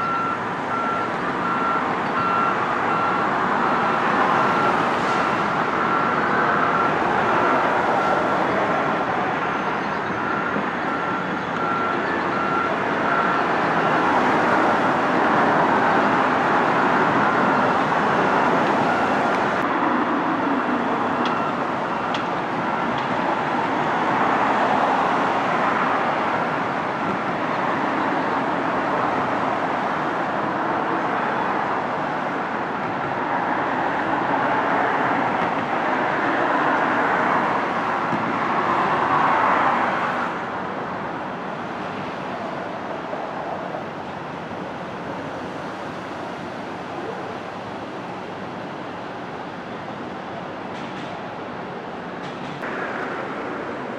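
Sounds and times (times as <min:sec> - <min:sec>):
road traffic noise: 0:00.0 - 0:53.9.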